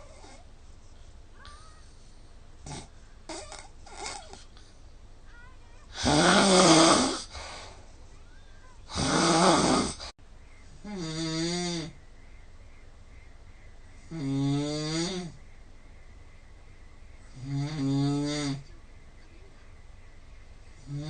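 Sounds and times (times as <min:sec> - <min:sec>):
person snoring loudly: 0:06.0 - 0:07.3, 0:08.9 - 0:10.1, 0:10.8 - 0:12.0, 0:14.1 - 0:15.4, 0:17.4 - 0:18.6.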